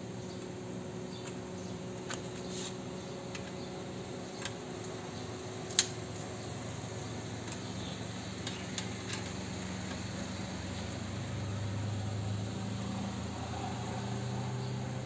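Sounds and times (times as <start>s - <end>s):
car engine idling: 3.8s - 15.0s.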